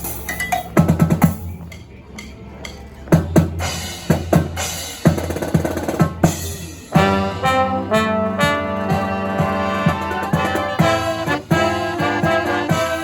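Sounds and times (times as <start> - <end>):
brass held chords: 6.9 - 13.0.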